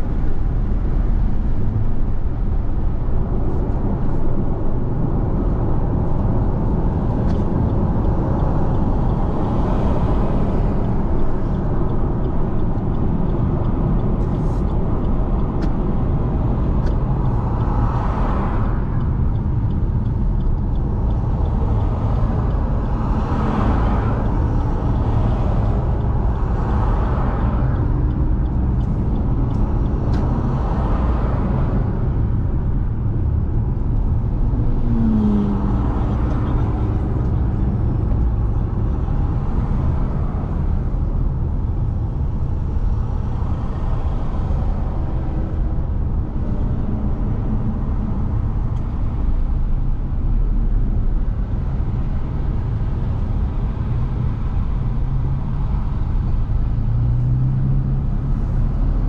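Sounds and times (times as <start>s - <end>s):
car engine and tyre rumble: 0.0s - 59.0s
light ticks: 7.1s - 17.8s, 19.0s - 22.6s, 24.2s - 31.2s.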